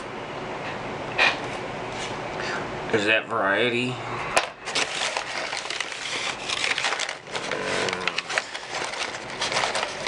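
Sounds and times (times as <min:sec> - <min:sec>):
plastic clips rustling and clicking: 0:04.7 - 0:10.0.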